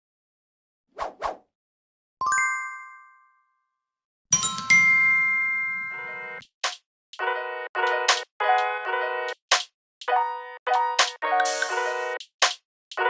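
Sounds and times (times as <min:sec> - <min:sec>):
quick swishes: 0:01.0 - 0:01.4.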